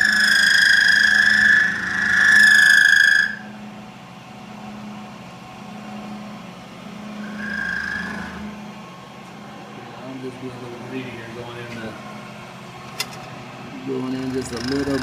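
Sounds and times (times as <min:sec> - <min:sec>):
milling cutter ringing squeal: 0:00.0 - 0:03.7, 0:07.1 - 0:08.6, 0:14.1 - 0:15.0
mill motor low hum: 0:00.0 - 0:15.0.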